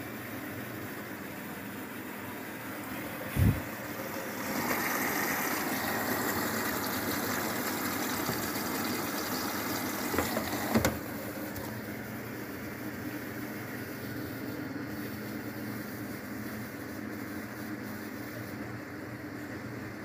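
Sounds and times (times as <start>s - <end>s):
water filling washing machine: 2.6s - 13.0s.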